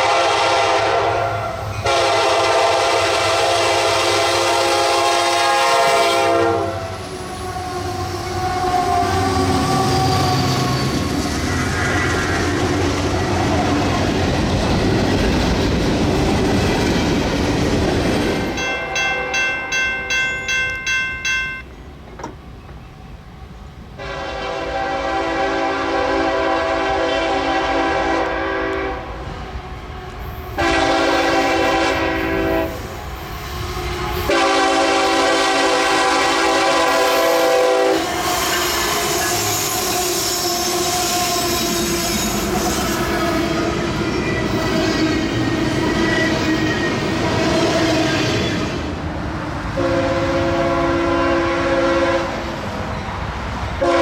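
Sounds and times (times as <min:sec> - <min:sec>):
locomotive air horn: 0:00.0 - 0:10.2, 0:24.0 - 0:32.9, 0:34.1 - 0:43.8, 0:49.8 - 0:52.5, 0:53.8 - 0:54.0
train wheels clattering on rails: 0:08.9 - 0:23.1
bell ringing: 0:18.5 - 0:22.4.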